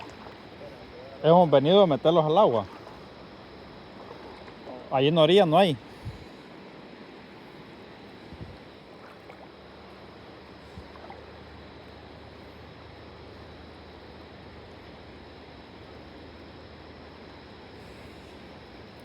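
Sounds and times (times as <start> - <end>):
flowing water rushing: 0.0 - 12.8.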